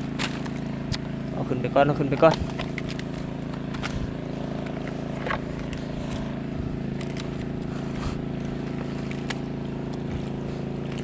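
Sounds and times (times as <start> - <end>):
tractor engine running: 0.0 - 11.0.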